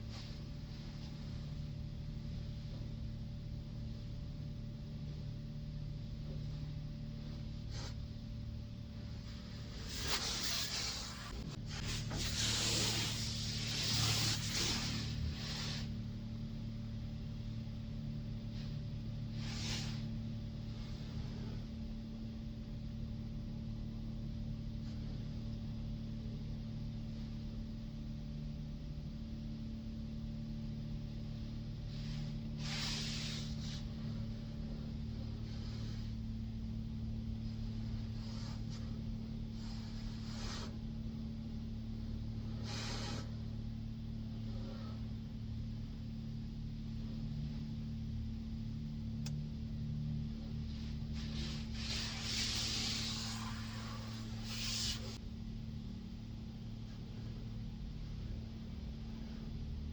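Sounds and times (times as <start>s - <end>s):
low mechanical drone: 0.0s - 59.9s.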